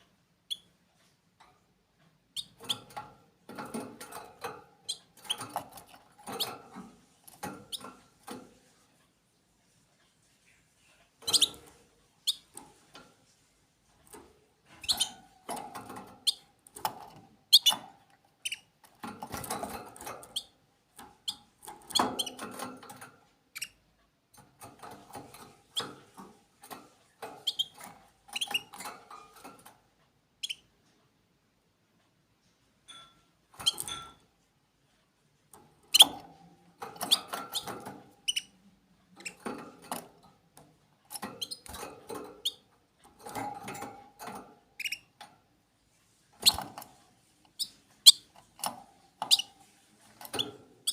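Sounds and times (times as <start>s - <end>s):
pet birds chirping: 0.5s - 0.8s, 2.3s - 2.9s, 10.5s - 12.9s, 14.6s - 15.3s, 17.5s - 17.8s, 18.4s - 19.0s, 23.5s - 23.8s, 27.4s - 27.8s, 30.4s - 30.8s, 37.0s - 38.6s, 44.8s - 45.2s, 46.4s - 46.6s, 47.5s - 48.6s, 49.2s - 50.9s.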